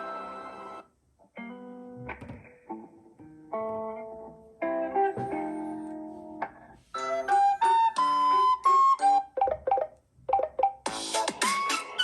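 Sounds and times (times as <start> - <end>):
ringtone melody: 7.0 - 12.0.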